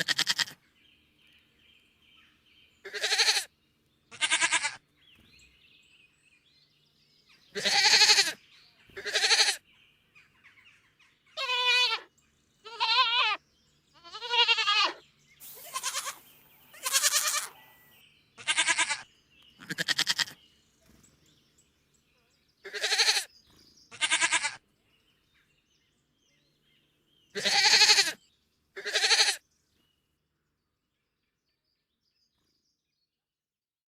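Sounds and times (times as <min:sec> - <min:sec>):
goat bleating: 0:00.0 - 0:00.6, 0:02.8 - 0:03.5, 0:04.1 - 0:04.8, 0:07.5 - 0:08.4, 0:09.0 - 0:09.6, 0:11.4 - 0:13.4, 0:14.0 - 0:17.8, 0:18.4 - 0:20.4, 0:22.6 - 0:23.3, 0:23.9 - 0:24.6, 0:27.3 - 0:28.2, 0:28.8 - 0:29.4.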